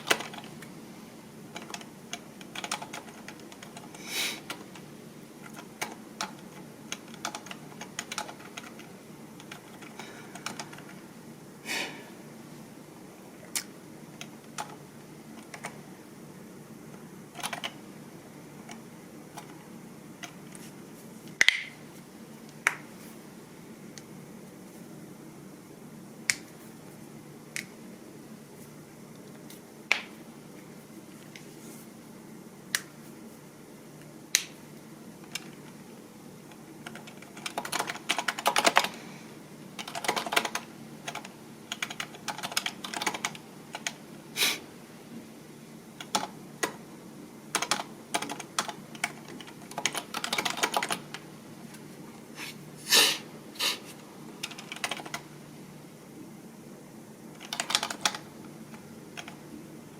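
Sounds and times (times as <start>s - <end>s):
computer keyboard typing: 0.0s - 0.6s, 1.5s - 11.0s, 14.1s - 14.8s, 15.4s - 15.8s, 17.3s - 17.8s, 36.5s - 39.0s, 39.8s - 44.0s, 46.0s - 46.8s, 47.5s - 51.2s, 54.4s - 55.3s, 57.3s - 59.4s.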